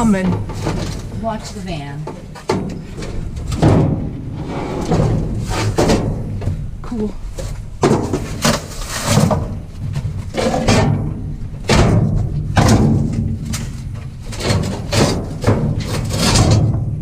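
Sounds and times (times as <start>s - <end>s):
scrap metal clanking: 2.4s - 6.6s, 7.4s - 16.9s.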